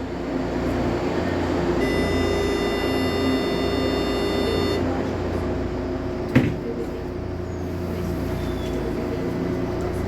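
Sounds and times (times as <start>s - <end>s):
train hum: 0.0s - 10.0s
pitched warning tone: 1.8s - 4.8s.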